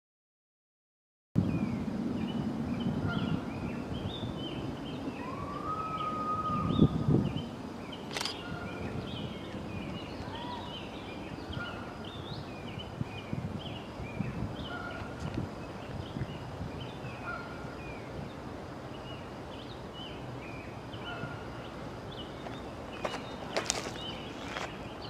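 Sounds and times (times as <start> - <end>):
songbirds chirping and singing: 1.5 - 25.0
sharp click: 8.1 - 8.4.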